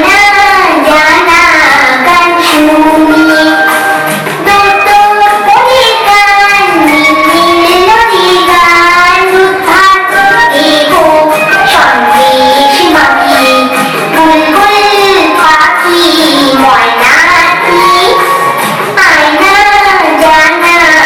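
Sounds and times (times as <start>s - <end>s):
high voice singing: 0.0s - 21.0s
instrumental backing: 0.0s - 21.0s.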